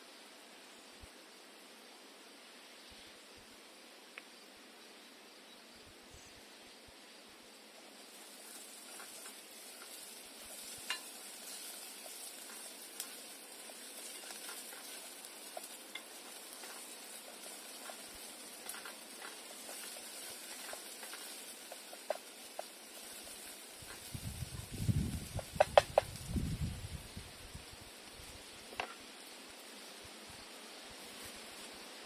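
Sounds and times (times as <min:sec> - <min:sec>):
food sizzling in oil: 0:07.7 - 0:32.0.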